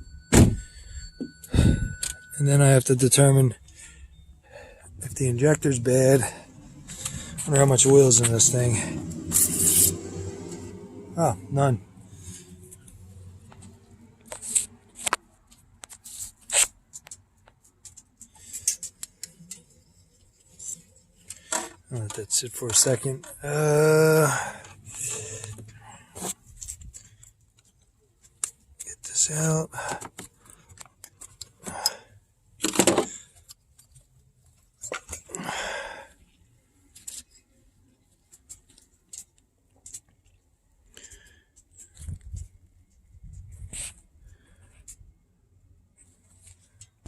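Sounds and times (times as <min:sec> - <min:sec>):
tools and engine parts clinking: 0:00.0 - 0:02.8, 0:24.2 - 0:34.1
hands handling tools and parts: 0:05.0 - 0:44.0.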